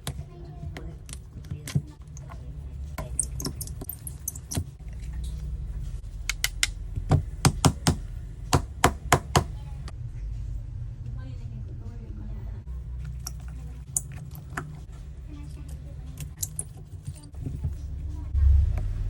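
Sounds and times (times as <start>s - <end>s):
steady low hum: 0.0s - 19.0s
sharp clicks and taps: 6.2s - 8.0s.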